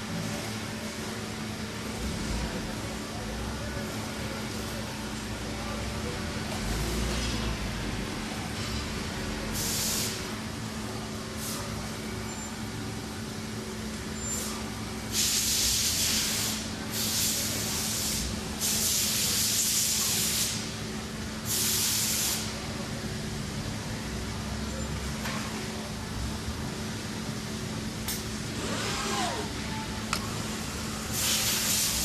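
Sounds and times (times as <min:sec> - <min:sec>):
air hissing: 0:09.6 - 0:10.3, 0:14.3 - 0:20.7, 0:21.5 - 0:22.6, 0:31.1 - 0:32.0.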